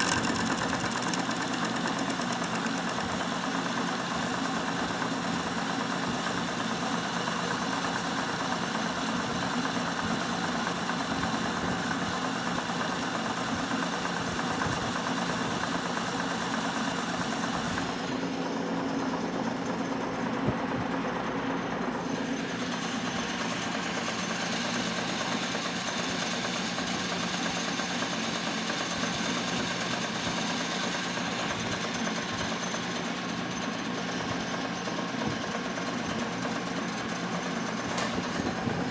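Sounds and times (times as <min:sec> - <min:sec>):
metal lathe humming and whining: 0:00.0 - 0:03.6.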